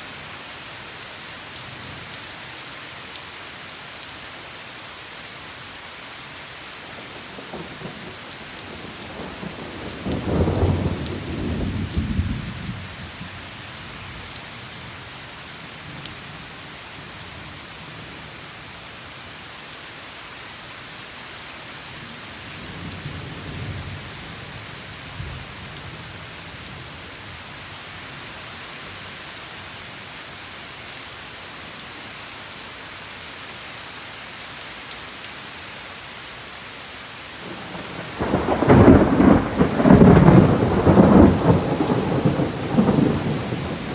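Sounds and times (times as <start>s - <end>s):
steady rain: 0.0s - 43.9s
rolling thunder: 7.2s - 13.3s, 37.4s - 43.9s.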